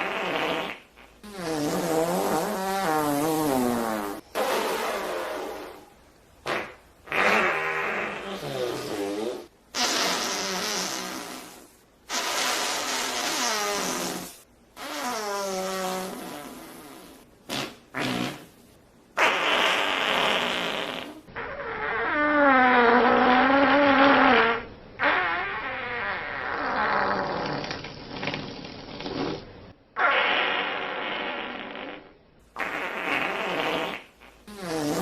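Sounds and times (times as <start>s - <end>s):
fart sound effects: 0.0s - 18.6s, 19.2s - 35.0s.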